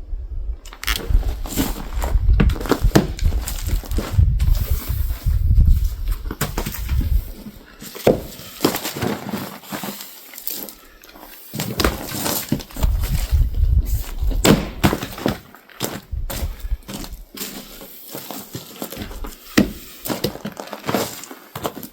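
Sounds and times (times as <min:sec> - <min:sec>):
low rumbling on microphone: 0:00.0 - 0:07.7, 0:12.6 - 0:14.8, 0:16.1 - 0:17.3
firewood pieces clattering together: 0:06.2 - 0:13.5.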